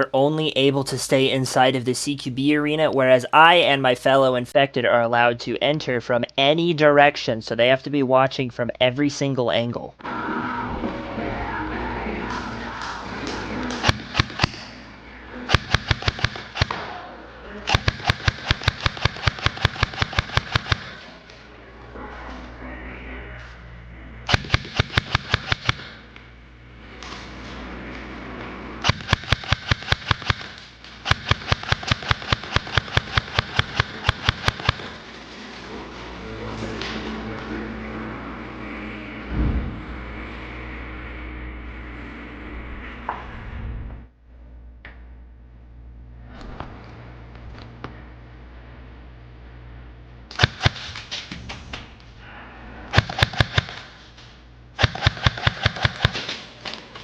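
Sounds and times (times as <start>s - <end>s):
airsoft gun shots: 13.8s - 14.6s, 15.5s - 16.9s, 17.7s - 21.1s, 24.3s - 26.0s, 28.8s - 35.0s, 50.3s - 51.2s, 52.9s - 54.0s, 54.8s - 56.4s.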